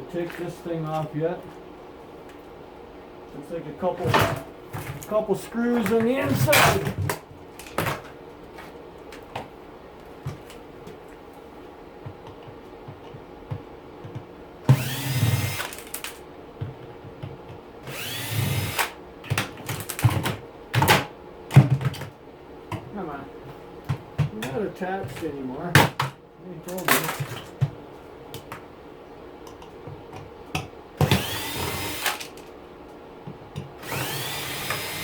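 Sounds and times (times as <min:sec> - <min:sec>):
power drill spinning up: 0:14.7 - 0:16.1, 0:17.8 - 0:19.0, 0:31.0 - 0:32.4, 0:33.8 - 0:35.0.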